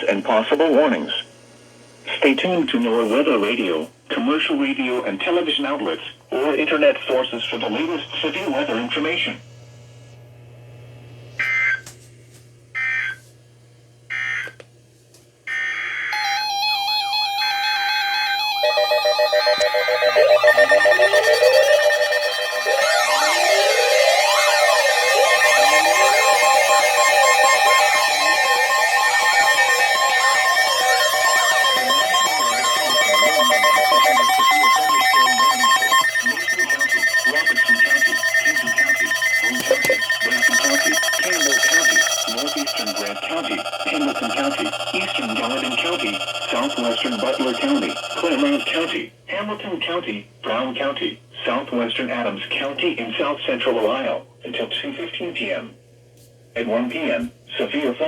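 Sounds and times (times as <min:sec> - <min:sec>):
beeping: 0:15.5 - 0:49.0
loud steady alert tone: 0:15.5 - 0:49.0
raspy digital chirps: 0:16.1 - 0:49.0
digital data burst: 0:17.2 - 0:49.0.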